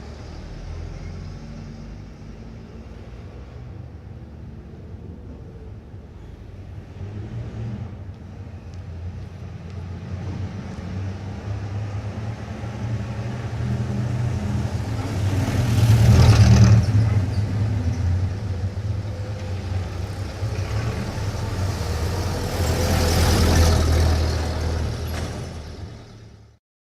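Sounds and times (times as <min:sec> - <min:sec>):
low rumble of traffic engines: 0:00.0 - 0:26.6
vehicle passing close: 0:09.2 - 0:26.3.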